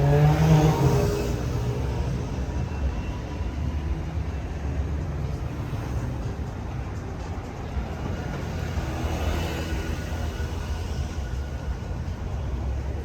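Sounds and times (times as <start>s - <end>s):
road noise: 0.0s - 13.0s
vehicle rumble: 0.0s - 13.0s.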